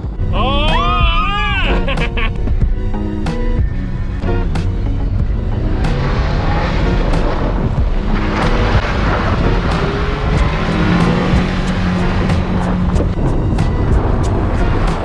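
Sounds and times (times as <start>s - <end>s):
car engine running under load: 2.3s - 15.0s
car knocking over bumps: 4.4s - 15.0s.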